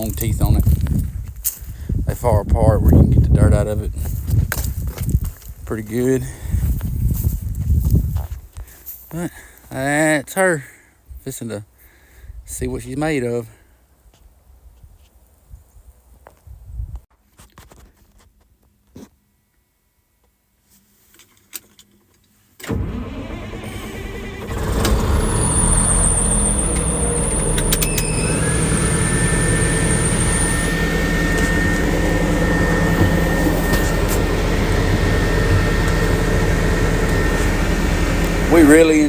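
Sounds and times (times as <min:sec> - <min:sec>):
diesel engine starting and idling: 0:22.6 - 0:39.0
high whine: 0:24.6 - 0:39.0.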